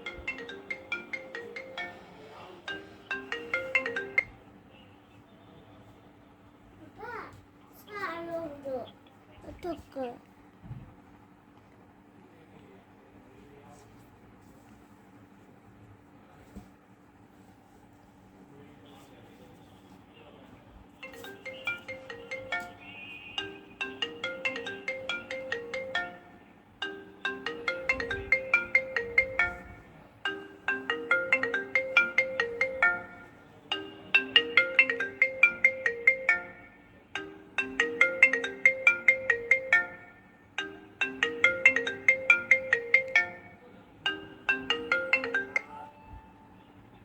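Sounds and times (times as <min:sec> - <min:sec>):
phone ringtone: 0:00.0 - 0:04.5, 0:21.0 - 0:46.7.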